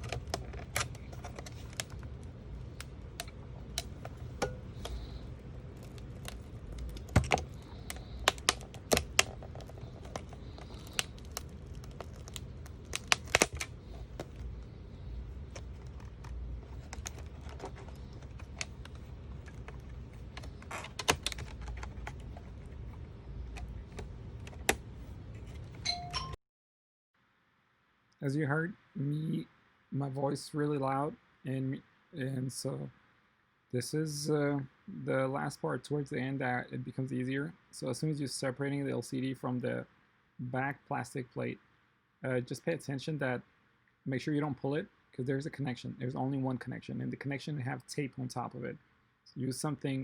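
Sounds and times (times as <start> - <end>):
low steady hum: 0.0 - 26.4.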